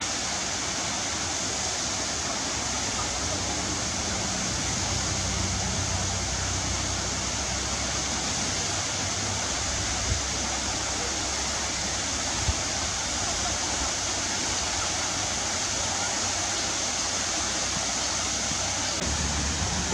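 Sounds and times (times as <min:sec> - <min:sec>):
waterfall rushing: 0:00.0 - 0:19.9
low rumble: 0:19.0 - 0:19.9.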